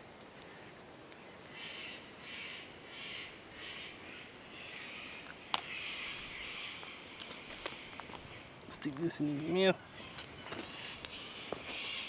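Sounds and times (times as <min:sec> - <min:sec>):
bird calling: 0:01.5 - 0:12.0.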